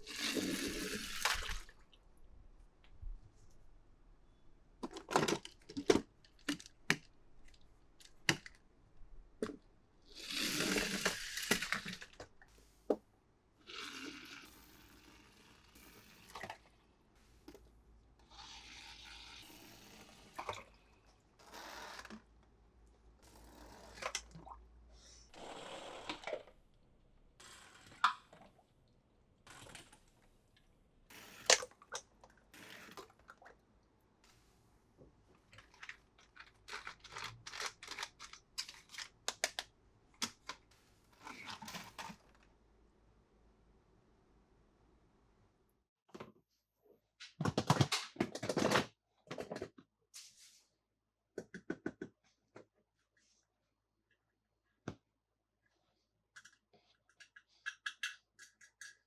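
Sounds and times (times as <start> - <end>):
packaging tearing and rustling: 35.6 - 39.6.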